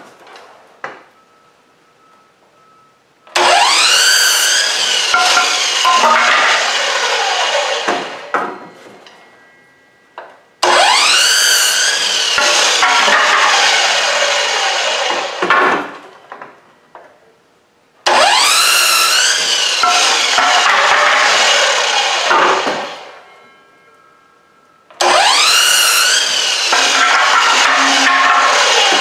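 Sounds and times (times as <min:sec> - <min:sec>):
chop saw cutting boards: 0:03.4 - 0:08.6, 0:10.6 - 0:16.0, 0:18.1 - 0:23.1, 0:25.0 - 0:29.0.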